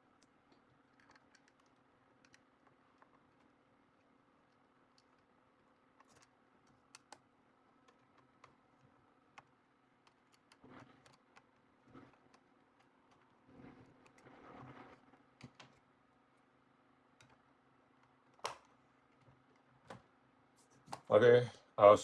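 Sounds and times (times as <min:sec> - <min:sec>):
small clicks and ticks: 0:00.0 - 0:15.8
soft handling noise: 0:00.0 - 0:21.2.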